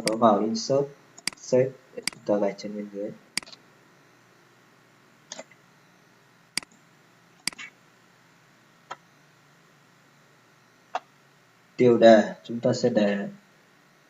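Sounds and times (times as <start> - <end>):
faint room hiss: 0.0 - 14.0
computer mouse clicking: 1.2 - 1.4, 2.0 - 2.3, 3.4 - 3.6, 7.4 - 7.7.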